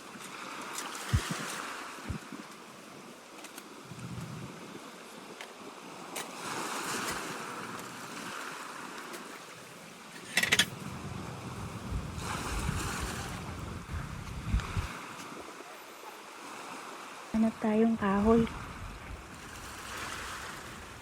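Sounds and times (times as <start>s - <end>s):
wind buffeting microphone: 1.0s - 2.4s, 3.8s - 4.9s, 10.4s - 15.6s, 18.0s - 21.0s
wind gusting: 1.1s - 2.3s, 3.8s - 5.0s, 10.3s - 15.7s, 18.0s - 21.0s.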